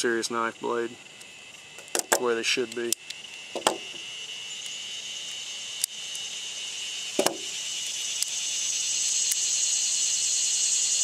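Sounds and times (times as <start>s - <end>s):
high-pitched insect chirring: 0.0s - 11.0s
sharp clicks: 1.2s - 4.0s, 7.2s - 8.4s.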